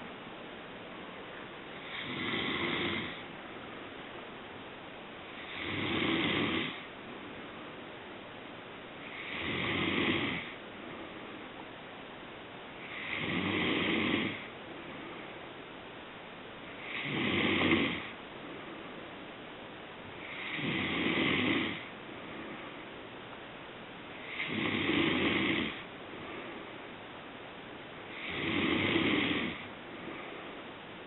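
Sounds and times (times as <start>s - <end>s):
snoring: 1.8s - 3.3s, 5.4s - 6.9s, 9.0s - 10.6s, 12.8s - 14.5s, 16.8s - 18.2s, 20.2s - 21.9s, 24.2s - 25.9s, 28.1s - 29.7s.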